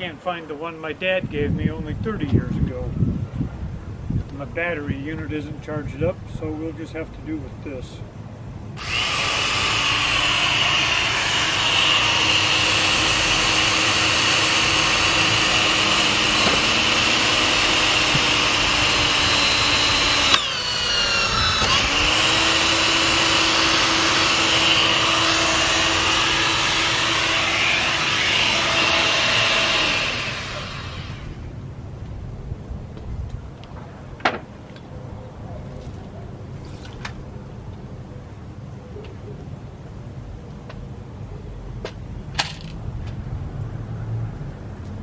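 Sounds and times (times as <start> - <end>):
electric drill whining: 8.8 - 31.4.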